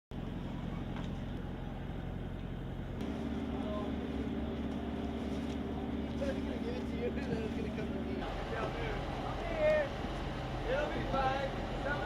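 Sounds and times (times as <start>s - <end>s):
vehicle engine droning: 0.1s - 12.0s.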